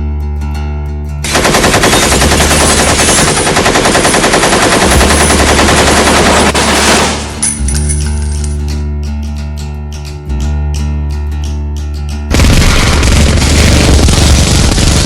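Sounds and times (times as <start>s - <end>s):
background music with bass line: 0.0s - 1.3s, 7.2s - 13.0s
machine gun firing: 1.3s - 7.5s, 12.3s - 15.0s.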